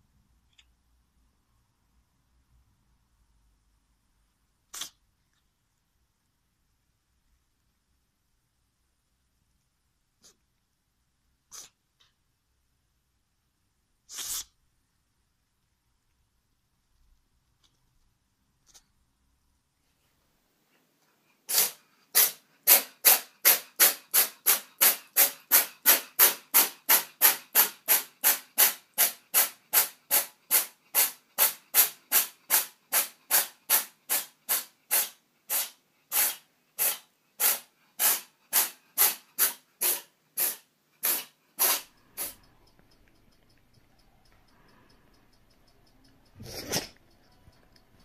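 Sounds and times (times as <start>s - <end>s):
short sharp hissing bursts: 4.7s - 5.0s, 11.4s - 11.9s, 14.0s - 14.6s, 21.4s - 42.7s.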